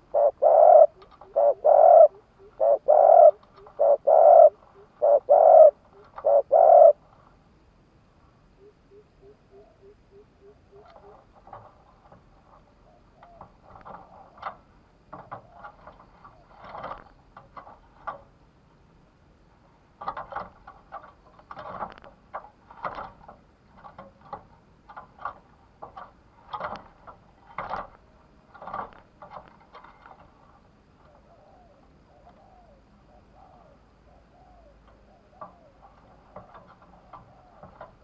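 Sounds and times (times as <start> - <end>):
dove cooing: 0.0 - 7.0, 8.6 - 11.7, 12.6 - 14.6, 31.0 - 38.0.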